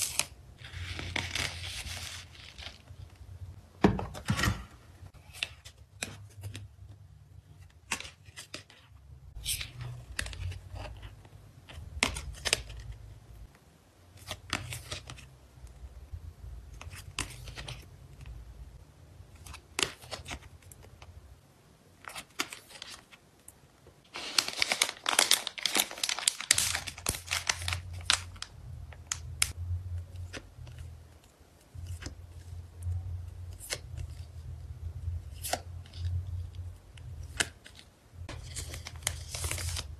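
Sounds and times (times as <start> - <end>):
plastic and paper wrapping crinkling: 0.0 - 3.2, 24.0 - 29.6, 37.4 - 39.9.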